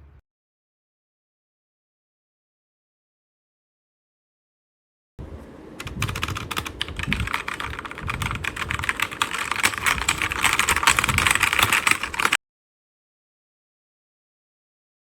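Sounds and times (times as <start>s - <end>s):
fast typing on mechanical keyboard: 5.8s - 12.4s.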